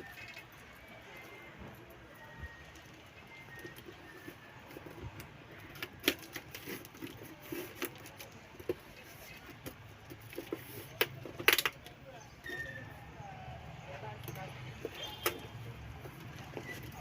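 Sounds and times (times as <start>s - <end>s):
cardboard and plastic rustling: 0.0s - 12.0s, 14.2s - 17.0s
packaging crackling: 2.5s - 9.2s.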